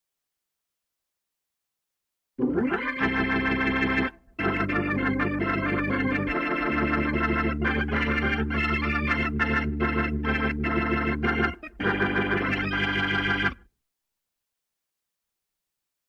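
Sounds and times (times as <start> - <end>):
held synth bass note: 2.4 - 13.5.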